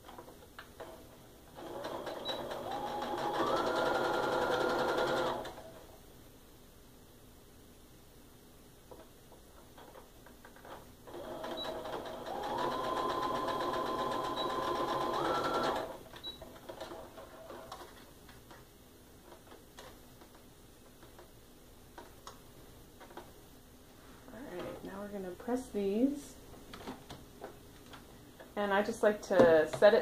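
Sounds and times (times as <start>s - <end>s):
electric sewing machine stitching: 1.6s - 5.8s, 11.1s - 16.0s.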